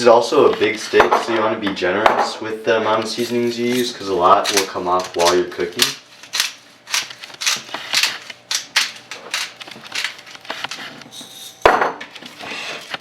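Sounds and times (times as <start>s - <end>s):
spice grinder crunching: 3.0s - 11.6s.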